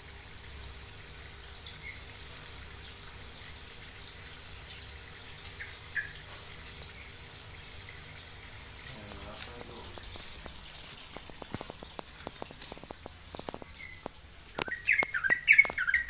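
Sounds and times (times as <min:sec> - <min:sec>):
small bird chirping: 0:05.6 - 0:06.2, 0:13.4 - 0:16.0.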